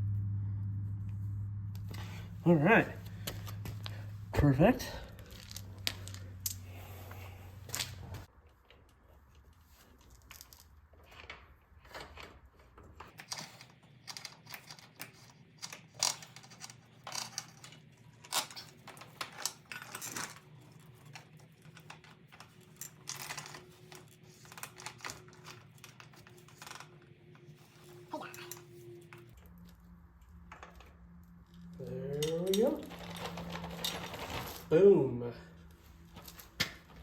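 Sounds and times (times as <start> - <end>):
metal chain clinking and rattling: 1.8 - 8.3, 13.3 - 27.0, 30.6 - 34.7.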